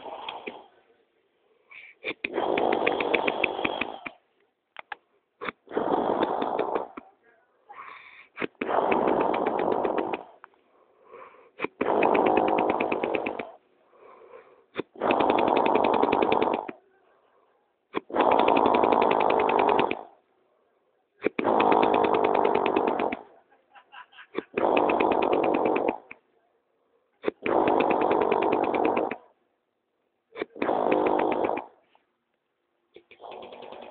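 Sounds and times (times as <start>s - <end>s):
person snoring loudly: 0.0s - 0.7s, 2.3s - 4.1s, 5.7s - 7.0s, 8.6s - 10.4s, 11.6s - 13.6s, 14.9s - 16.8s, 18.0s - 20.1s, 21.3s - 23.3s, 24.5s - 26.1s, 27.4s - 29.2s, 30.5s - 31.7s
faint breathing: 0.0s - 4.3s, 5.4s - 23.4s.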